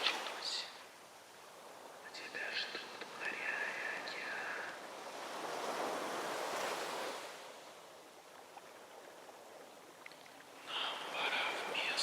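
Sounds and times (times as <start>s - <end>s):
faint clicks: 2.2s - 4.8s, 10.0s - 10.4s.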